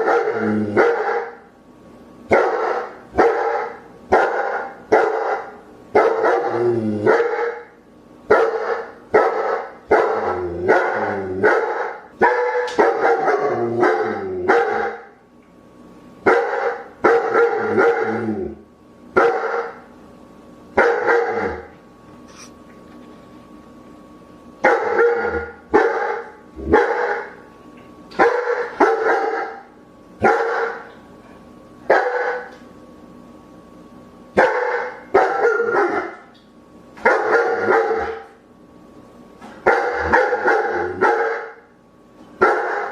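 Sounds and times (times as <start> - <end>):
dog barking: 0.0 - 1.4, 2.3 - 7.7, 8.3 - 15.1, 16.3 - 18.1, 19.2 - 19.8, 20.8 - 21.7, 24.6 - 27.4, 28.2 - 30.9, 31.9 - 32.5, 34.4 - 36.2, 37.0 - 38.3, 39.6 - 41.6, 42.4 - 42.9.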